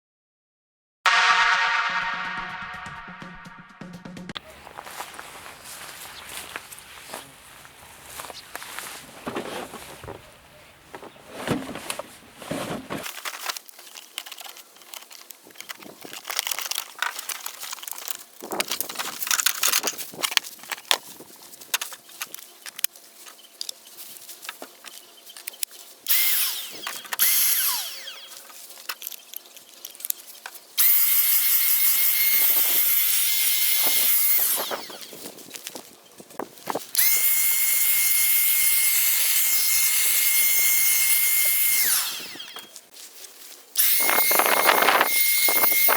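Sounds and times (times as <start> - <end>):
plastic packaging rustling and clicking: 10.9 - 26.1, 28.3 - 30.8
handheld vacuum cleaner whining: 26.1 - 29.2, 30.8 - 35.4, 36.9 - 42.9, 43.8 - 45.9.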